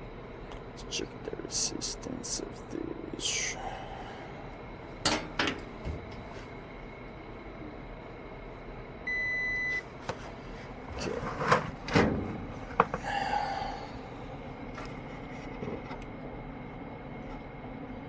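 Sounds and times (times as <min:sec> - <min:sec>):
multimeter beep: 0:09.0 - 0:09.8.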